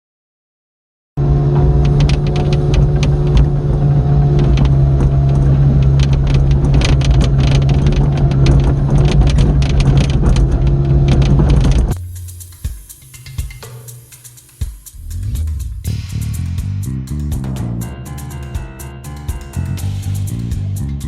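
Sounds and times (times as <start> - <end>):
excavator diesel engine running: 1.2 - 12.5
sharp rattling clicks: 1.8 - 15.7.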